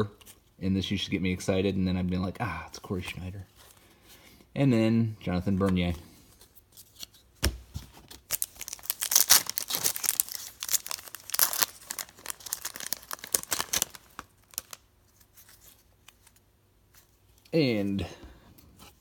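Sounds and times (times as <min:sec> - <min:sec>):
wrapper being torn and crinkled: 0:08.1 - 0:15.8.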